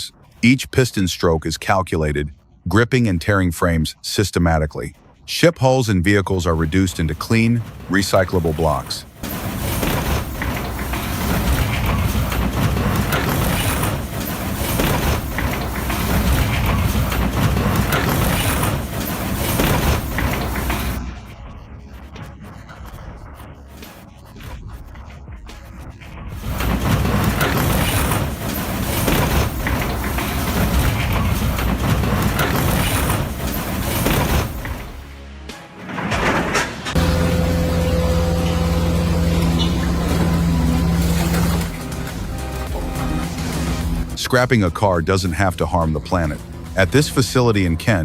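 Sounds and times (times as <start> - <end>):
machinery engine rumble: 6.2 - 21.8, 26.4 - 35.0, 36.6 - 48.0
scrap crunching and grinding: 6.6 - 21.0, 26.3 - 35.0, 35.8 - 44.2.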